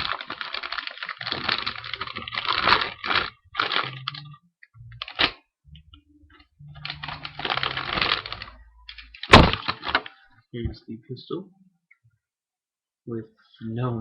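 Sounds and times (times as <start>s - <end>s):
packaging rustling and crinkling: 0.0s - 4.3s, 6.8s - 10.2s.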